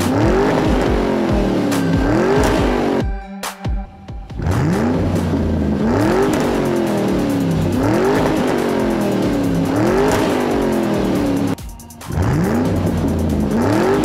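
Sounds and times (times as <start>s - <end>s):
monster truck engine revving: 0.0s - 3.0s, 4.4s - 14.0s.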